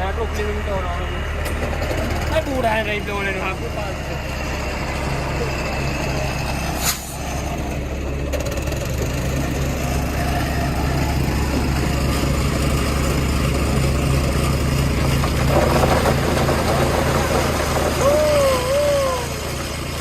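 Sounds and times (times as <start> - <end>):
diesel truck engine idling: 0.0 - 20.0.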